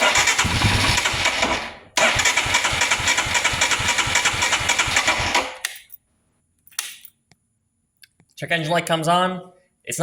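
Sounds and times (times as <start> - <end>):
motorcycle engine cranking: 0.0 - 5.8.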